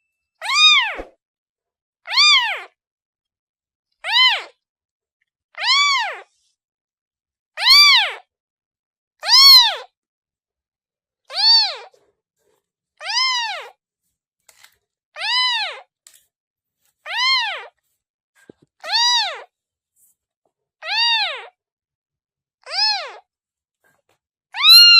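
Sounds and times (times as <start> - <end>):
kitten meowing: 0.4 - 1.1, 2.1 - 2.7, 5.6 - 6.2, 7.6 - 8.2, 9.2 - 9.9, 11.3 - 11.9, 13.0 - 13.7, 15.2 - 15.8, 17.1 - 17.7, 18.8 - 19.5, 20.8 - 21.5, 22.7 - 23.2, 24.6 - 24.9.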